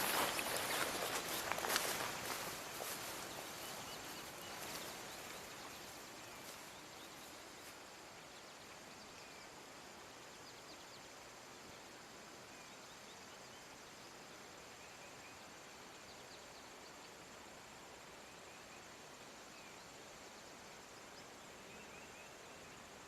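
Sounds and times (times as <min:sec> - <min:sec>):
footsteps swishing through wet grass: 0:00.0 - 0:07.8
low hiss: 0:00.0 - 0:23.0.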